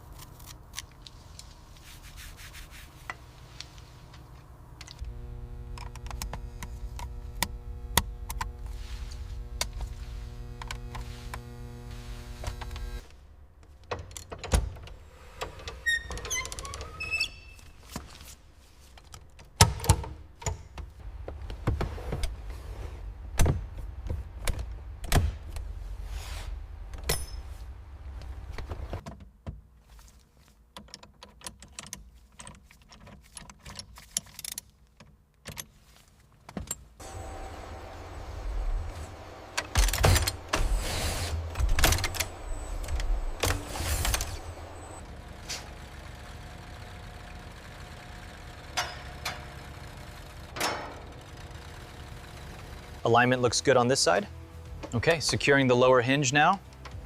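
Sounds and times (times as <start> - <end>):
brief squeaking: 15.8 - 17.8
metal parts and tools clunking: 48.8 - 49.6, 50.6 - 51.2.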